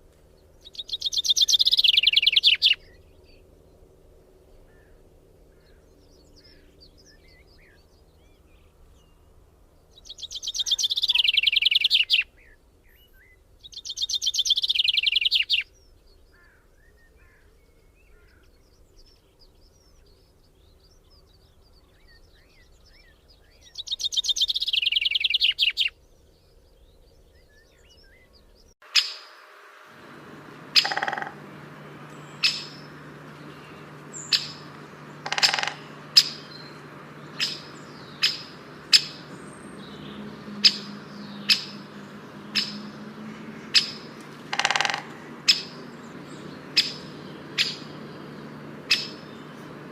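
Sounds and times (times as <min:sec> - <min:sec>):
faint chirps of other birds: 0:00.0 - 0:49.9
songbird trilling: 0:00.6 - 0:03.0, 0:10.0 - 0:12.3, 0:13.6 - 0:15.6, 0:23.6 - 0:25.9, 0:28.9 - 0:49.9.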